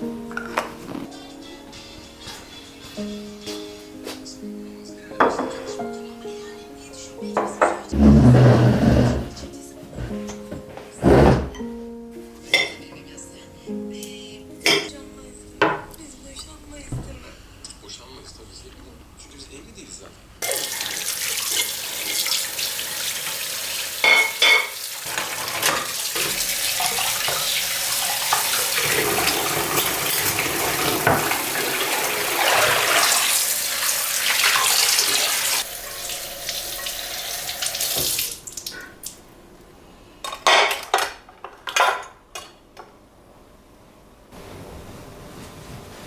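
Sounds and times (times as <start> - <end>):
dishes clattering: 0.3 - 1.1, 5.2 - 5.9, 7.3 - 11.8, 12.4 - 13.1, 14.6 - 15.0, 15.6 - 17.2, 23.2 - 39.0, 40.2 - 43.0
crockery clinking: 5.2 - 5.8, 7.4 - 10.6, 12.4 - 13.0, 14.6 - 15.0, 15.6 - 16.6, 24.0 - 32.0, 40.2 - 43.0
tap water running into sink: 20.4 - 39.2.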